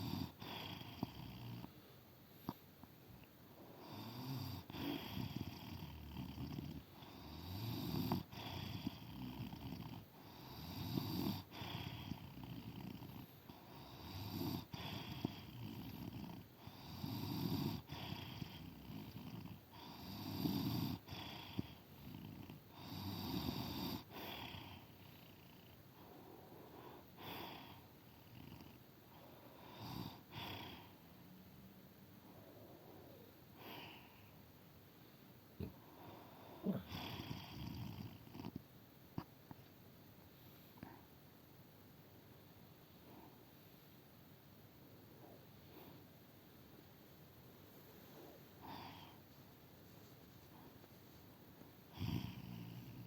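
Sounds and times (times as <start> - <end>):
woman snoring: 0.0 - 1.7, 3.8 - 25.7, 29.6 - 31.0, 36.6 - 38.6, 51.9 - 53.0.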